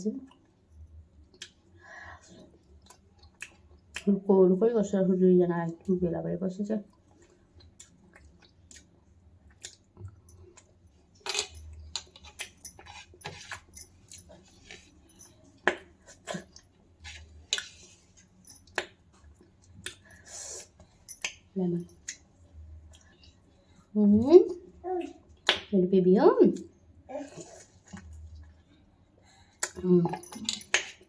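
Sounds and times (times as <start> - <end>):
mouth smacking and chewing: 6.9 - 10.8.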